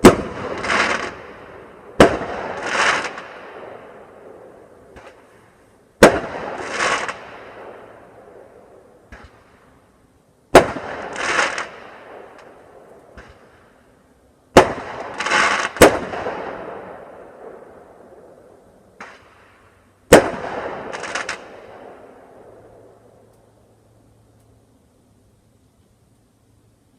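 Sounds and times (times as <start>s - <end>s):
fireworks bangs: 0.0s - 5.4s, 6.0s - 9.7s, 10.5s - 13.7s, 14.5s - 23.0s
fireworks crackling: 0.0s - 9.9s, 10.5s - 24.6s.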